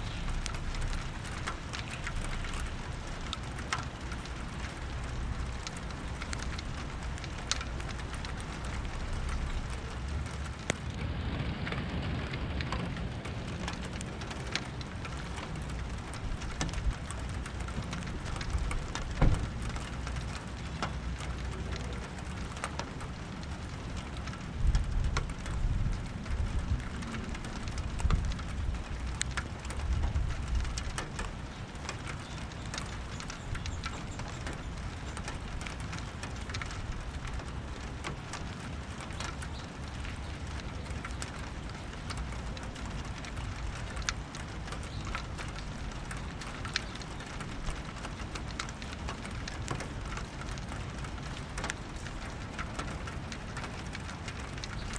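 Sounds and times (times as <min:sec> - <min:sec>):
sharp drips and drops: 0:00.0 - 0:54.9
steady rain: 0:00.0 - 0:54.9
low thunder rumbles: 0:08.0 - 0:19.9.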